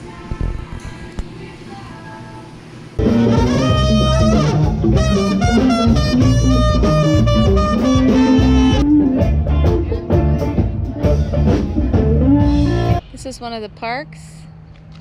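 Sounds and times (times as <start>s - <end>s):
music with guitar and beat: 3.0s - 13.0s.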